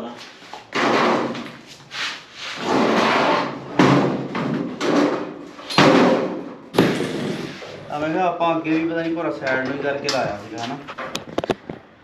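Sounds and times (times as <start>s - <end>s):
garage door panels clattering: 2.8s - 7.9s
sharp knocks: 3.7s - 7.8s.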